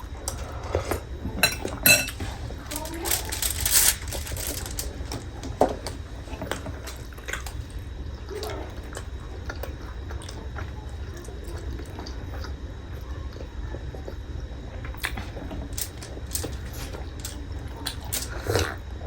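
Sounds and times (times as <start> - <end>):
wet chewing: 2.1 - 14.2.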